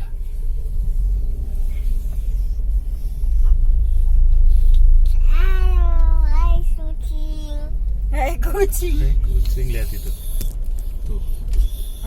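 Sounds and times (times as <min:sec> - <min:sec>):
car engine and road noise: 0:00.0 - 0:12.0
child singing: 0:05.3 - 0:07.7.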